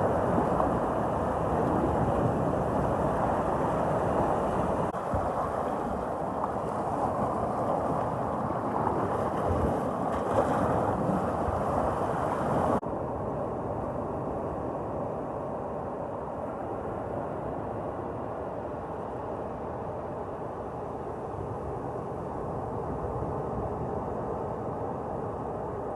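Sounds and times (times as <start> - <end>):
sea waves breaking on beach: 0.0 - 12.8.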